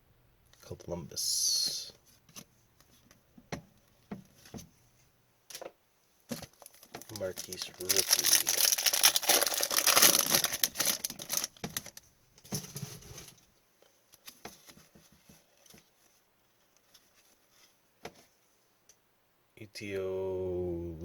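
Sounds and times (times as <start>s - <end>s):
card pack wrapper crinkling: 6.3s - 12.1s.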